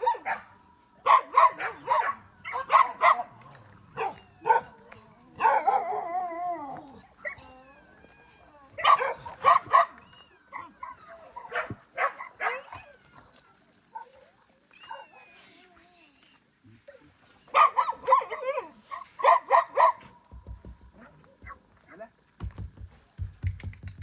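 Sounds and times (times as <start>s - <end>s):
dogs barking: 0.0s - 7.6s, 8.7s - 15.5s, 17.4s - 20.3s.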